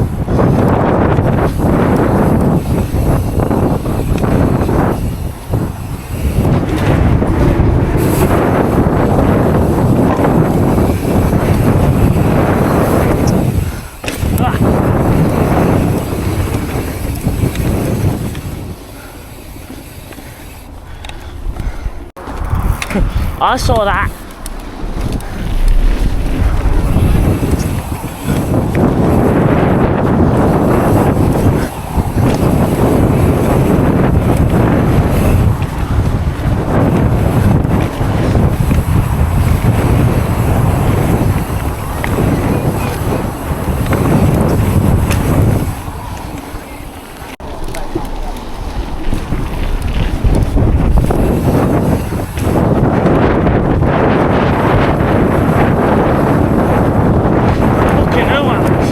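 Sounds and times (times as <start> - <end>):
wind buffeting microphone: 0.0 - 58.9.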